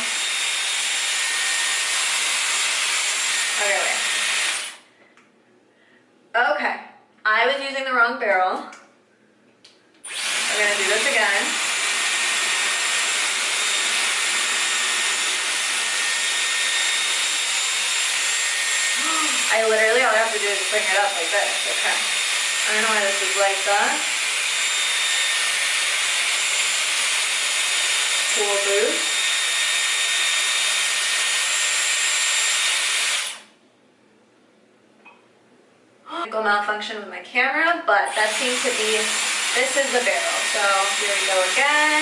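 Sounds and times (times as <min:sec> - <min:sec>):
hair styler blowing air: 0:00.0 - 0:04.8, 0:10.0 - 0:33.5, 0:38.1 - 0:42.0.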